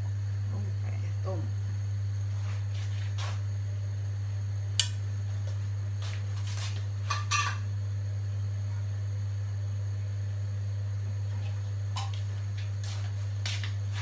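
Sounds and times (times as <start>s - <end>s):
low electrical hum: 0.0s - 14.0s
utensils clinking against pot: 7.1s - 7.6s.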